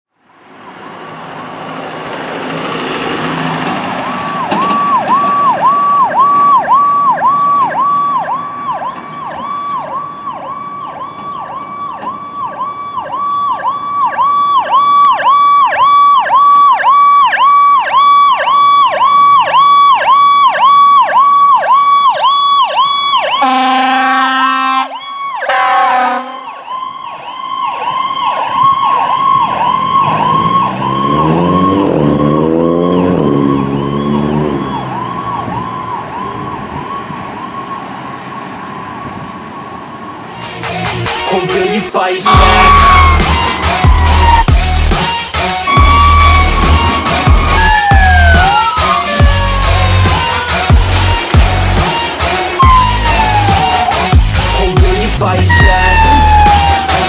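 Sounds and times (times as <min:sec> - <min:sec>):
engine revving: 0:00.4 - 0:06.3, 0:29.5 - 0:36.5, 0:42.2 - 0:57.0
ambulance siren yelping: 0:02.4 - 0:41.4, 0:42.2 - 0:57.0
air horn blasts: 0:23.4 - 0:26.6, 0:42.2 - 0:44.4, 0:45.6 - 0:47.6, 0:51.9 - 0:53.2, 0:55.4 - 0:56.3.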